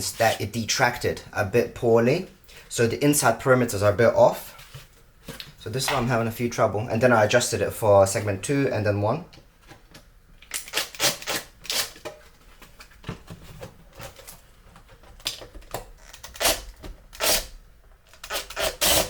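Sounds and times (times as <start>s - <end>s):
drill boring into plastic: 18.2s - 19.0s.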